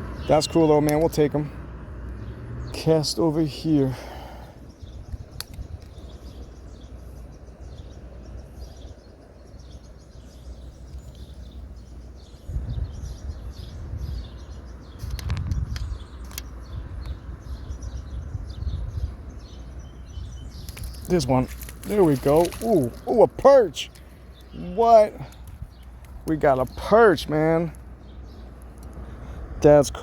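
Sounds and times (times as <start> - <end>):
small birds chirping: 0.0 - 30.0
sharp clicks: 5.1 - 6.2, 15.0 - 17.2, 20.5 - 23.2, 28.5 - 29.1.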